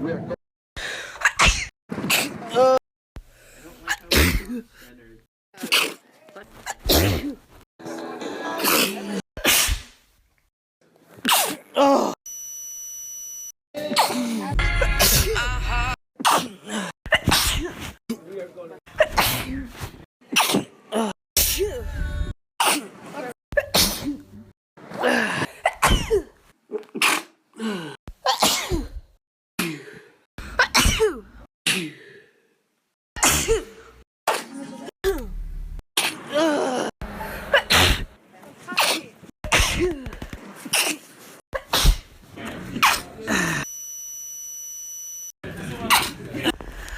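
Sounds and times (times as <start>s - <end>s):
person sneezing: 1.2s - 2.8s, 3.9s - 4.6s, 5.6s - 7.4s, 8.6s - 9.9s, 11.2s - 12.2s, 13.8s - 15.4s, 16.2s - 18.0s, 19.0s - 21.8s, 23.6s - 24.2s, 24.9s - 29.0s, 30.5s - 32.0s, 33.2s - 34.5s, 36.0s - 38.1s, 38.7s - 42.1s, 42.8s - 43.7s, 45.8s - 46.6s
high electronic beep: 12.3s - 13.6s, 43.7s - 45.3s.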